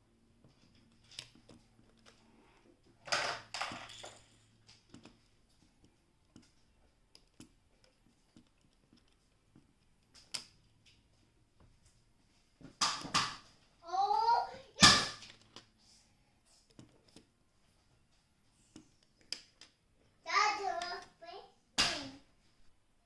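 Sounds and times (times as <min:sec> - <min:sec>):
small objects clicking and tapping: 0:00.5 - 0:11.1, 0:18.6 - 0:19.9.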